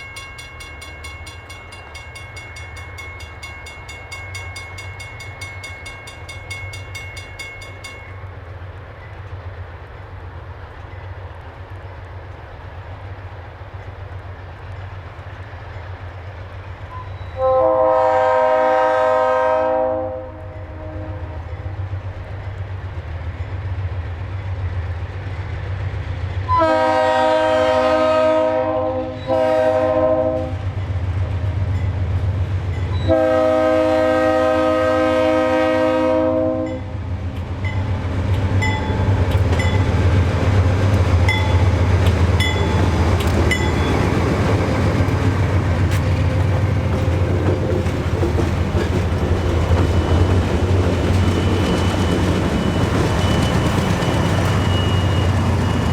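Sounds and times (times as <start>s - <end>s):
diesel locomotive engine rumbling: 0.0s - 55.9s
locomotive horn blasts: 16.9s - 21.7s, 26.5s - 30.7s, 32.9s - 36.9s
train wheels clicking over rail joints: 37.1s - 55.9s.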